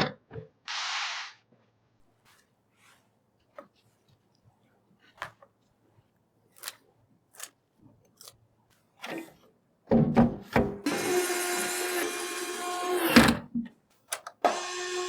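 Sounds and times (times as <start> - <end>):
computer parts clicking and tapping: 14.1 - 14.4.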